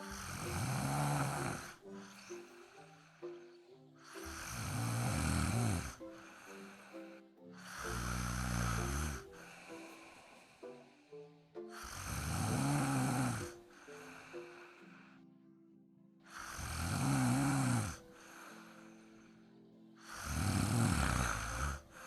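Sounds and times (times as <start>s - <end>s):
dog snoring: 0.0s - 3.0s, 4.0s - 6.0s, 7.6s - 10.4s, 11.7s - 14.2s, 16.3s - 18.5s, 20.0s - 22.0s.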